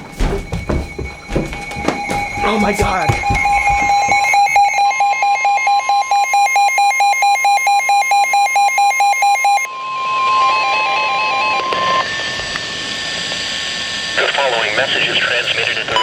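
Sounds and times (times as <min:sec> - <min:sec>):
steady warning tone: 0:00.0 - 0:16.0
rapid electronic beeps: 0:01.0 - 0:09.7.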